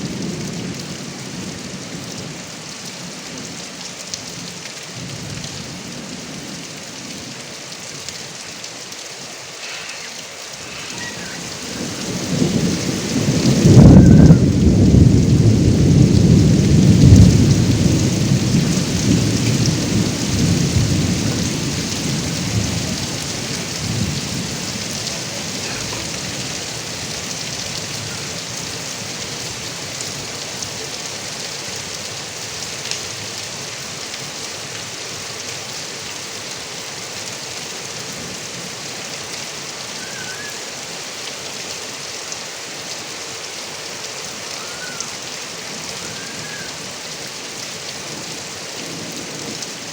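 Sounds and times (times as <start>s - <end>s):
heavy rain: 0.0s - 49.9s
rumble of thunder: 10.7s - 29.5s.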